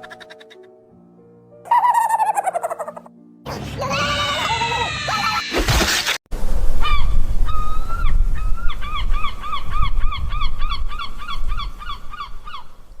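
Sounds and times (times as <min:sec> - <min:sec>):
gull calling: 0:01.7 - 0:05.6.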